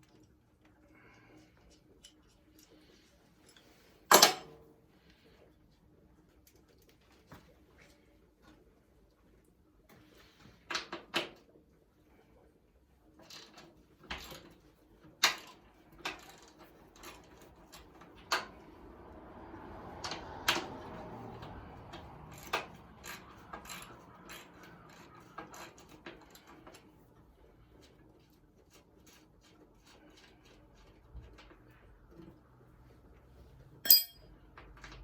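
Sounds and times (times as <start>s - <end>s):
hand tools clicking on metal: 33.9s - 34.2s.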